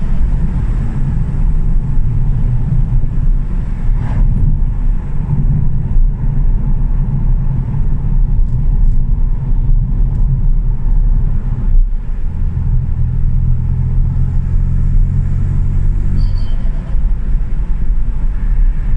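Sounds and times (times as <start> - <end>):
car engine rumbling: 0.0 - 18.9.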